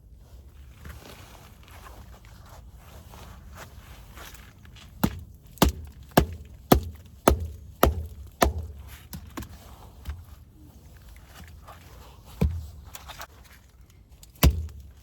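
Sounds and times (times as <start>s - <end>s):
axe chopping firewood: 5.0s - 10.3s, 12.4s - 13.0s, 14.3s - 15.0s.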